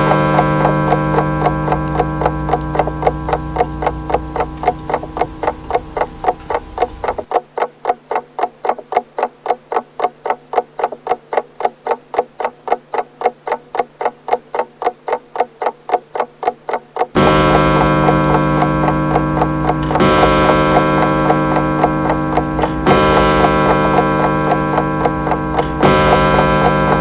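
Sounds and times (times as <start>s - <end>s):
clock gong ringing: 0.0s - 7.3s, 17.2s - 27.0s
clock ticking: 0.0s - 27.0s.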